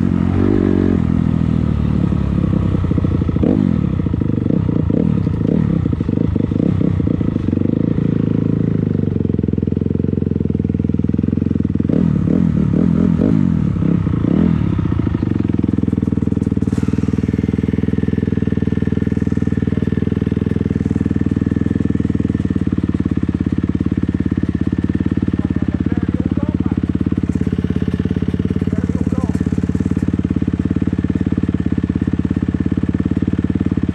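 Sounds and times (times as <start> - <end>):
dirt bike engine revving: 0.0 - 8.6, 11.8 - 33.9.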